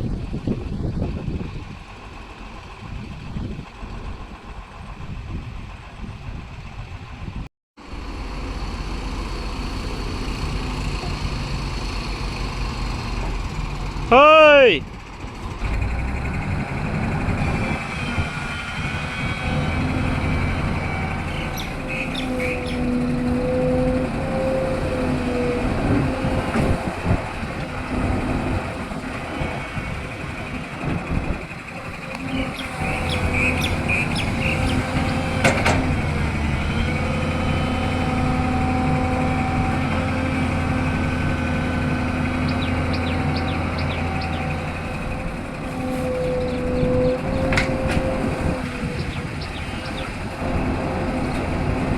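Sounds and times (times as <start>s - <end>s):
excavator diesel engine: 0.0s - 51.9s
metallic clanks and squeaks: 17.3s - 40.3s, 42.4s - 51.6s.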